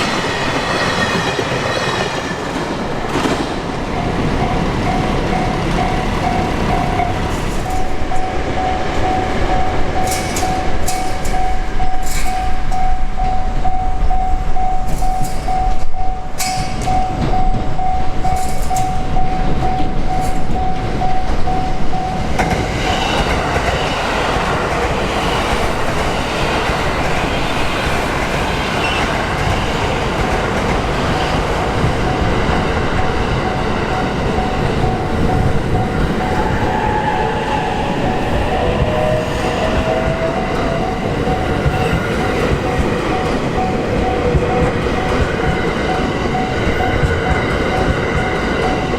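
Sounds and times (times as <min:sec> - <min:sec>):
freight train passing: 0:00.0 - 0:48.9
level-crossing alarm bell ringing: 0:03.9 - 0:23.0, 0:31.6 - 0:48.9.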